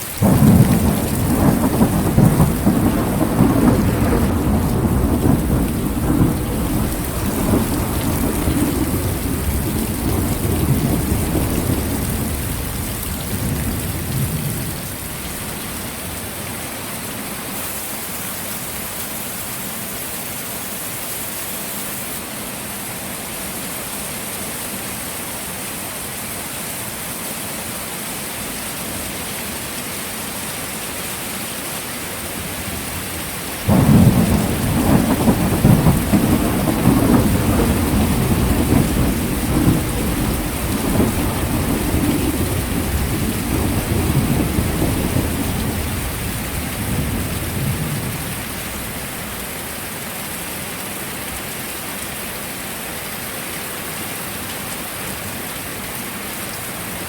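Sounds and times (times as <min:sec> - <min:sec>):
heavy rain falling: 0:00.0 - 0:57.0
thunder rumble: 0:00.2 - 0:15.8, 0:33.6 - 0:49.2.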